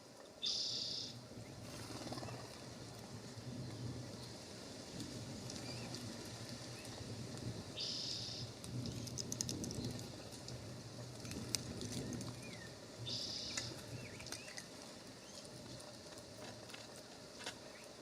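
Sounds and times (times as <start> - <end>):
faint bird chirps: 0.4 - 1.2, 7.8 - 8.5, 12.4 - 14.6
harsh buzzy bird calls: 0.4 - 2.4, 13.1 - 14.6.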